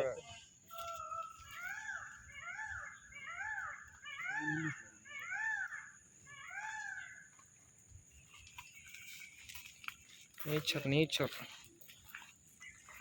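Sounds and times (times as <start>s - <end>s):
high-pitched insect whine: 0.0s - 7.3s
animal calling: 0.0s - 7.6s.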